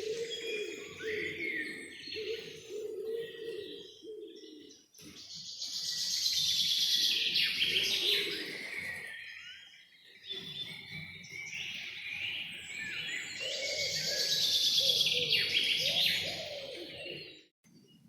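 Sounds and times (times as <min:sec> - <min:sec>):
low cooing calls: 0:00.0 - 0:04.9, 0:07.1 - 0:09.1, 0:13.3 - 0:17.4.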